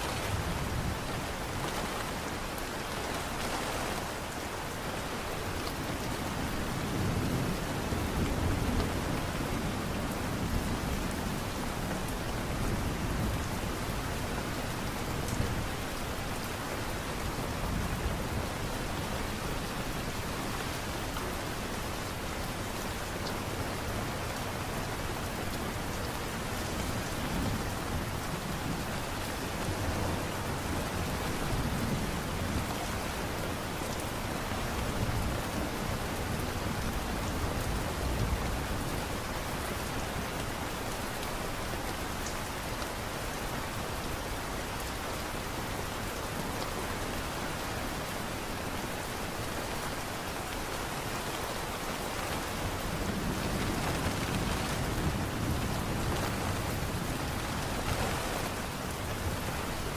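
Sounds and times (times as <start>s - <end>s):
light rain falling: 0.0s - 59.9s.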